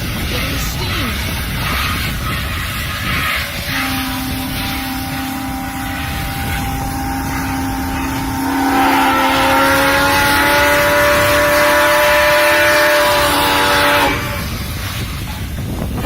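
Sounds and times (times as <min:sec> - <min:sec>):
locomotive engine drone: 0:00.0 - 0:16.0.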